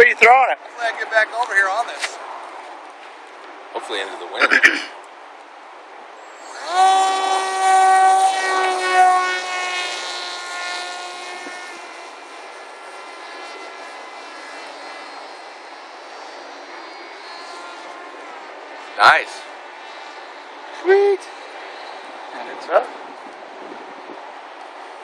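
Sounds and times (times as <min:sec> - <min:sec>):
model plane motor whine: 0:06.2 - 0:25.0.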